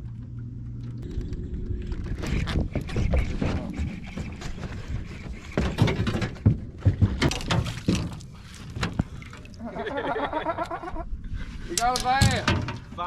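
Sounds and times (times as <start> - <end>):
knocks and thumps in a boat: 2.0 - 9.4, 11.8 - 13.0.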